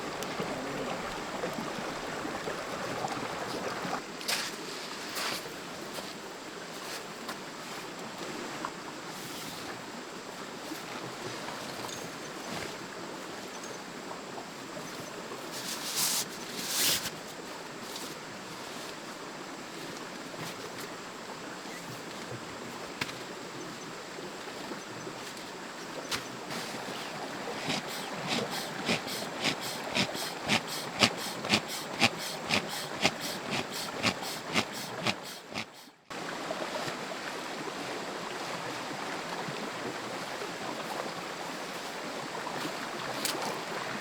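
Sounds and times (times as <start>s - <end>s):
forest stream running: 0.0s - 44.0s
short bursts of noise: 27.6s - 36.0s.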